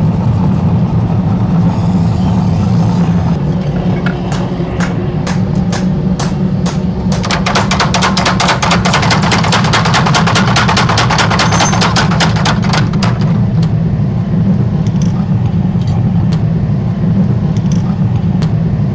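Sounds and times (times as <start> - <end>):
low machine hum: 0.0 - 18.9
power hammer pounding steel: 2.1 - 13.8.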